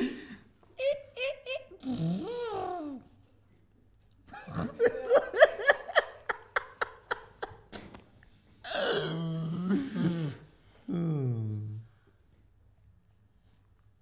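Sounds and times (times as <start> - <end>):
person laughing: 0.0 - 2.1, 4.3 - 7.6.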